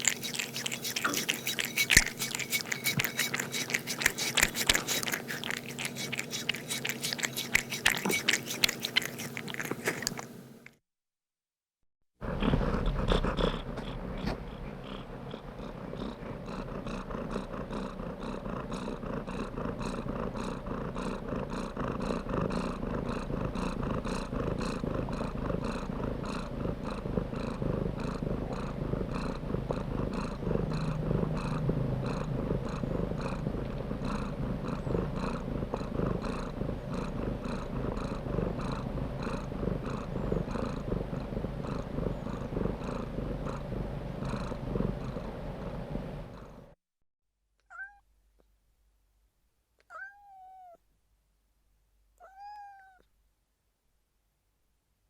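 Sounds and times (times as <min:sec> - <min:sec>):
cat purring: 0:00.0 - 0:10.5, 0:12.2 - 0:46.8.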